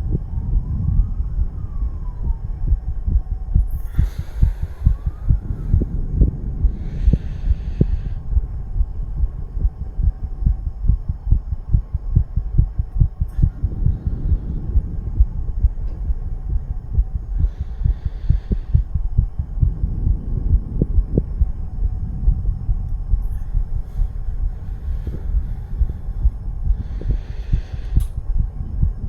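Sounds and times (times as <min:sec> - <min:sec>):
fast heartbeat thumping: 0:00.0 - 0:29.0.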